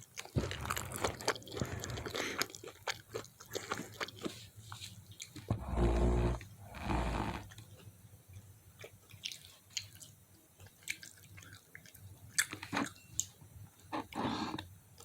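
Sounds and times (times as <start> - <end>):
person chewing: 0.0 - 6.4.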